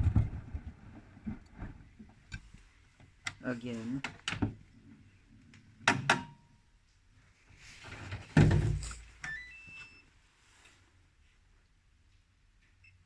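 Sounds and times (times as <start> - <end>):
washing machine knocks and thunk: 8.3 - 8.8.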